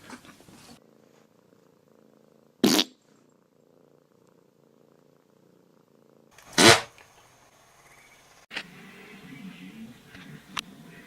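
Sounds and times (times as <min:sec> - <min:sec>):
cat purring: 0:00.0 - 0:06.6.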